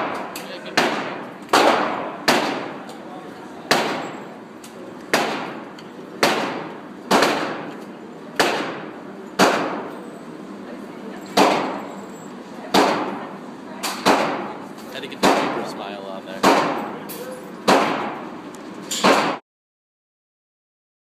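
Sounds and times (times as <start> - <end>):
gunshots with echo: 0.0 - 2.8, 5.1 - 5.6, 6.2 - 7.7, 8.4 - 9.9, 15.2 - 15.7, 16.4 - 16.9, 17.7 - 18.2.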